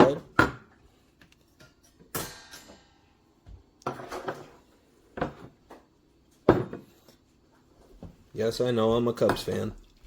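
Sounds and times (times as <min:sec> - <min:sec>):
kitchen items knocking and clunking: 0:00.0 - 0:00.8, 0:01.5 - 0:07.2, 0:09.1 - 0:09.9.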